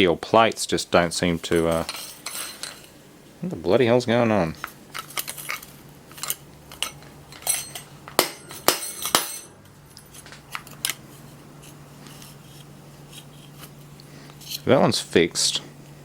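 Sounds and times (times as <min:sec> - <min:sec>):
steady low hum: 0:00.0 - 0:16.0
metal parts clicking and clinking: 0:01.4 - 0:02.9, 0:04.6 - 0:11.0
ringing metallic clanks: 0:06.8 - 0:09.6.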